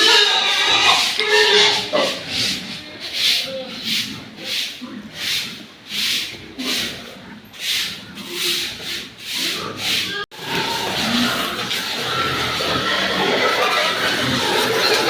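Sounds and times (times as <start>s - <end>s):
scratchy rubbing strokes: 0.3s - 10.2s.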